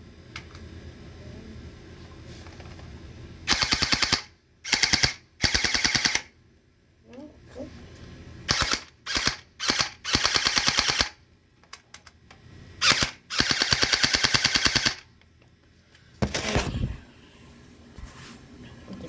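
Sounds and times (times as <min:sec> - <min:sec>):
toy blaster firing bursts: 0:03.5 - 0:06.3, 0:08.5 - 0:11.2, 0:12.8 - 0:15.1.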